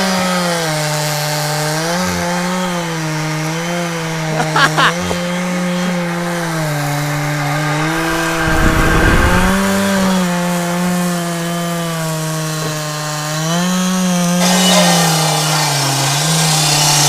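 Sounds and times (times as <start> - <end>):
chainsaw cutting wood: 0.0 - 17.0
low rumble: 7.2 - 10.4.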